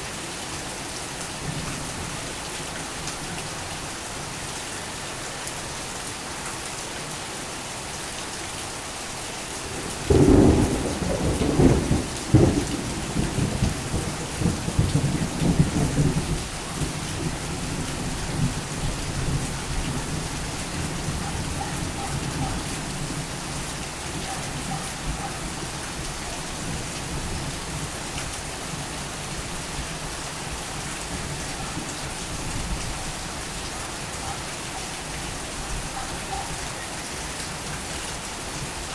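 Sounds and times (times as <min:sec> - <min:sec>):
heavy rain falling: 0:00.0 - 0:38.9
thunder clap and rumbling: 0:10.1 - 0:18.6.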